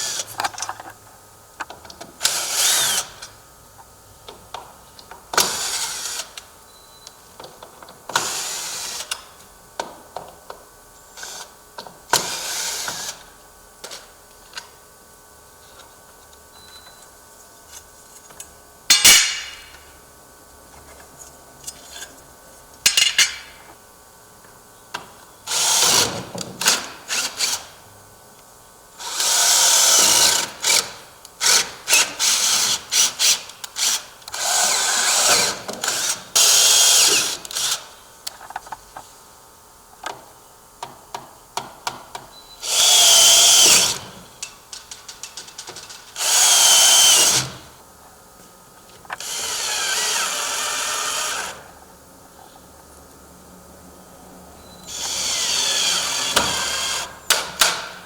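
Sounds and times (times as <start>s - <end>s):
power drill driving screws: 2.2s - 3.2s, 5.4s - 6.4s, 8.2s - 9.2s, 12.2s - 13.2s, 25.5s - 27.7s, 29.0s - 37.9s, 42.6s - 44.1s, 46.1s - 47.6s, 49.2s - 51.7s, 54.9s - 57.8s.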